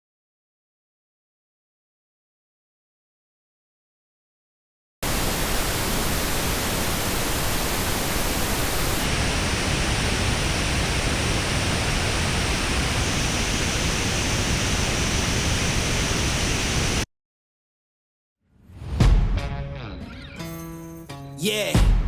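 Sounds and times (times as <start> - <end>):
pink noise test signal: 5.0 - 17.1.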